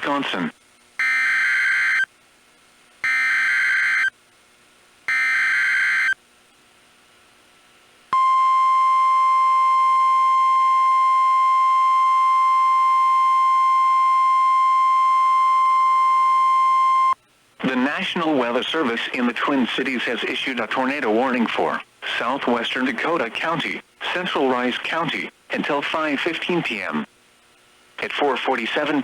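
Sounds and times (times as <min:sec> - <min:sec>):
steady single-pitch alarm tone: 0:01.0 - 0:02.1, 0:03.0 - 0:04.1, 0:05.1 - 0:06.2, 0:08.1 - 0:17.2.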